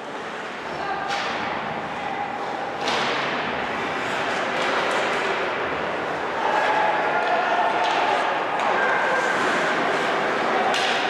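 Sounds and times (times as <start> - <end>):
arena crowd noise: 0.0 - 11.0
hockey stick hitting puck: 2.4 - 11.0.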